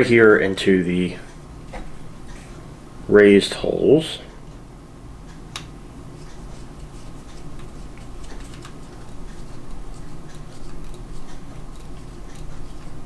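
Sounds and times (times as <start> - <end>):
screwdriver clicking and scraping: 8.3 - 13.0.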